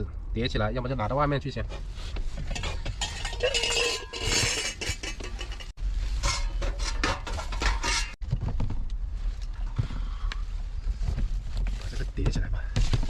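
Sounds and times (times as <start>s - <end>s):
household items clattering: 2.4s - 8.5s
short metallic rings: 2.6s - 5.7s.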